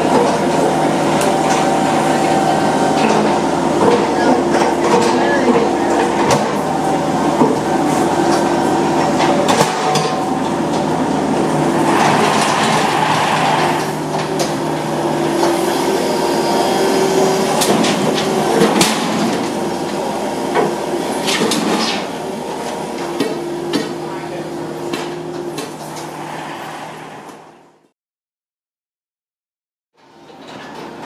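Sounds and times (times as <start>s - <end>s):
machine running: 0.0s - 27.9s
knocks and clanks: 11.6s - 14.8s.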